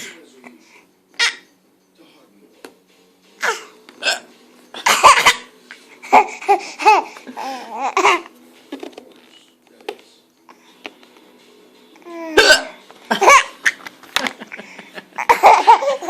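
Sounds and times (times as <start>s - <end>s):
baby laughing: 6.0s - 8.3s, 13.1s - 16.0s
woman hiccuping: 12.4s - 12.7s.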